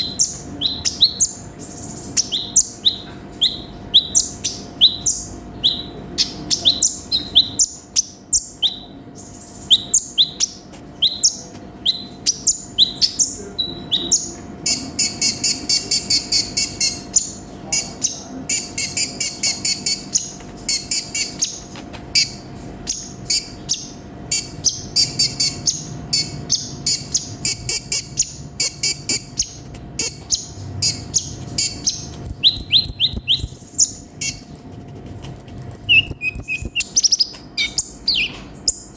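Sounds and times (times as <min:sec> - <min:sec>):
faint steady hum: 0:00.0 - 0:38.9
bird singing sharp high chirps: 0:22.9 - 0:34.7, 0:35.4 - 0:38.9.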